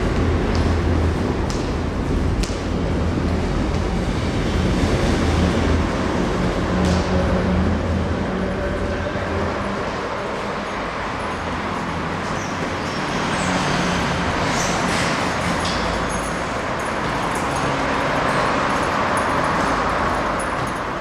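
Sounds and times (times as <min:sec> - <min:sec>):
moving vehicle rumble: 0:00.0 - 0:21.0.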